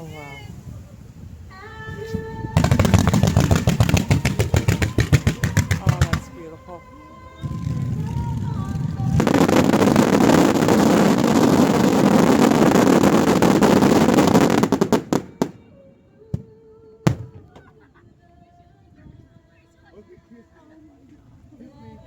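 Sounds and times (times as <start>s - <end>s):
fireworks crackling bursts: 2.1s - 17.9s
fireworks sharp bangs: 2.5s - 6.7s, 7.4s - 17.8s.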